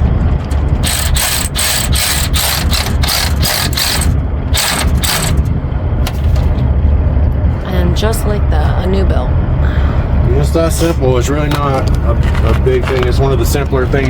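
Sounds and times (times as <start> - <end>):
ratchet wrench clicking: 0.8 - 5.5.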